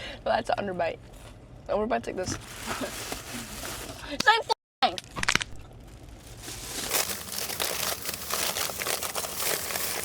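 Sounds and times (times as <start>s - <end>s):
candy wrapper crinkling: 5.2s - 10.0s.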